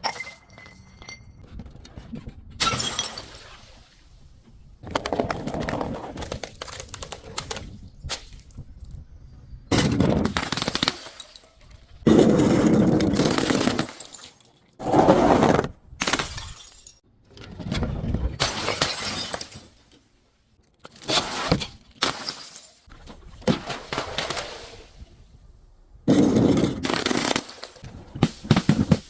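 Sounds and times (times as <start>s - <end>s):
glass bottles breaking: 2.6s - 3.4s, 10.4s - 11.7s, 13.2s - 14.6s, 16.1s - 17.0s, 18.4s - 19.8s, 22.0s - 22.9s.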